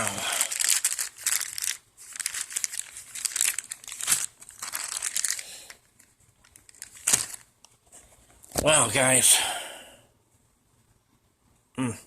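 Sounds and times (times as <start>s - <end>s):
packaging crinkling: 0.0s - 8.7s.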